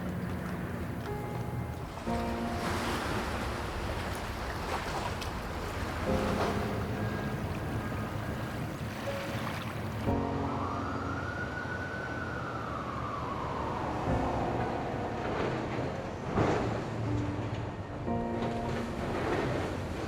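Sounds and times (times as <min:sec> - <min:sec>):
city traffic rumble: 0:00.0 - 0:20.0
emergency siren wailing: 0:06.1 - 0:16.6.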